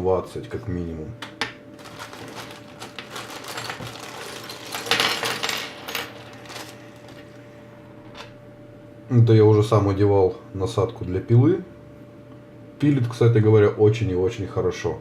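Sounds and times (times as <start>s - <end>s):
small tool accessories rattling: 1.8s - 7.2s.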